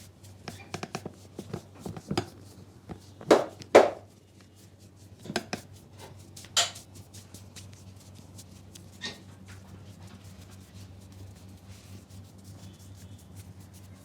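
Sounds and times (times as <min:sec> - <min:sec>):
hands slapping in massage: 0:03.3 - 0:04.0.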